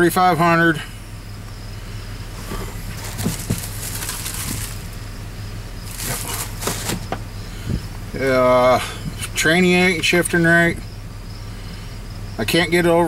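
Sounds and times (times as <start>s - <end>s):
truck engine running: 0.0s - 13.0s
hissy rustling noise: 2.3s - 5.0s.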